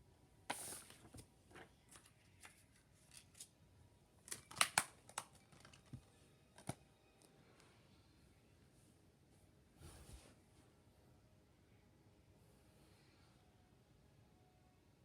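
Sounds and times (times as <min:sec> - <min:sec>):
paper rustling: 0:00.5 - 0:03.5.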